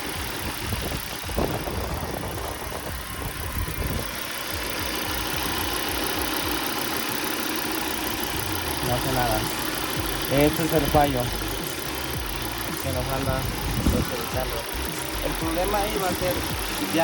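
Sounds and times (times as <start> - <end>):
car engine idling unevenly: 0.0 - 17.0.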